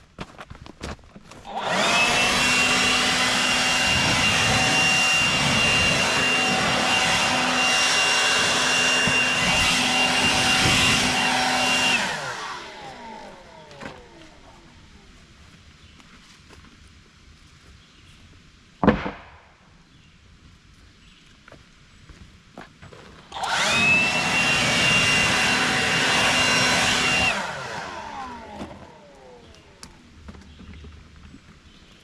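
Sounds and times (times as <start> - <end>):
woodworking machine motor whining: 1.3 - 14.8, 23.3 - 30.1.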